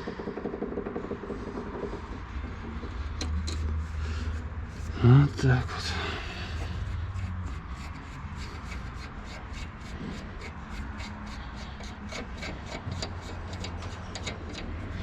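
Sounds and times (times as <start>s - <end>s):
steady low hum: 0.0s - 15.0s
hand tool scraping: 3.2s - 15.0s.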